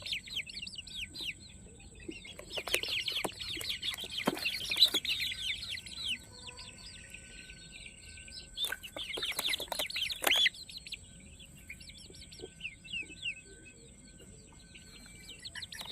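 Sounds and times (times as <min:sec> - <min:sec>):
chicks peeping: 0:00.0 - 0:15.9.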